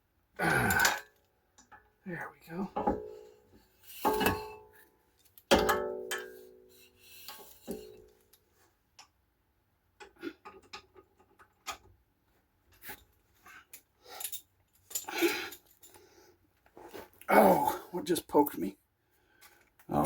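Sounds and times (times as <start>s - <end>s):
metal tools clinking: 2.7s - 6.5s, 13.7s - 16.0s.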